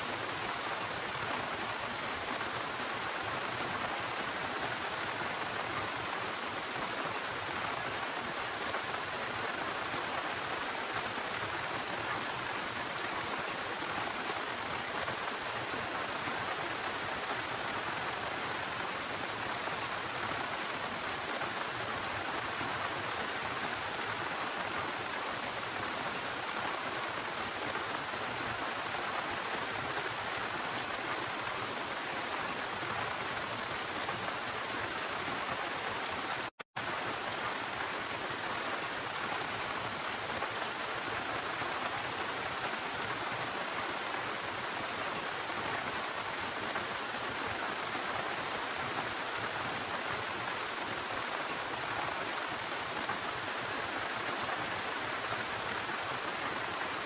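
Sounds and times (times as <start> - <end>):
heavy rain pouring: 0.0 - 57.0.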